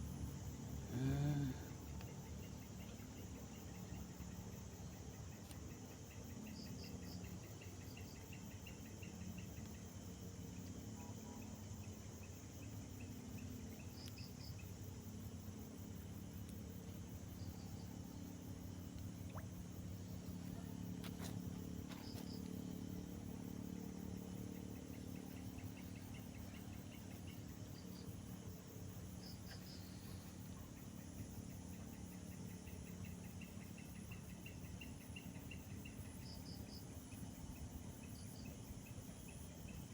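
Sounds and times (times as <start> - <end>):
faint low hum: 0.0 - 39.9
insects chirping: 0.0 - 39.9.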